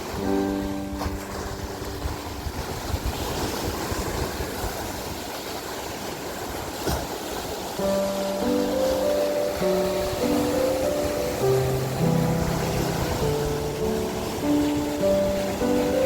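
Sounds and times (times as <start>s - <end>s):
ocean waves washing on shore: 0.0s - 16.0s
background music: 7.8s - 16.0s.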